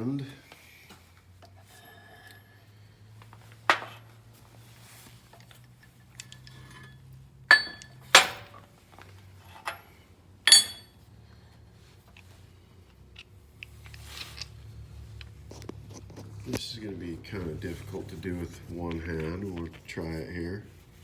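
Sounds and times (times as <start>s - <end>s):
low steady hum: 0.0s - 21.0s
metal pieces clinking: 7.5s - 8.6s, 10.5s - 10.9s.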